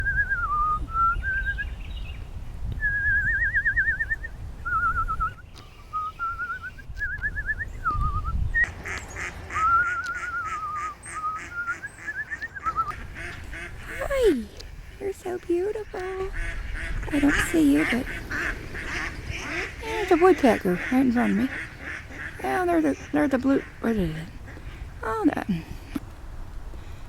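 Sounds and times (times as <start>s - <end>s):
person whistling a tune: 0.0s - 1.6s, 2.8s - 8.7s, 9.6s - 12.9s
wind rumbling on microphone: 0.0s - 27.0s
rapid chattering bird call: 8.6s - 24.3s.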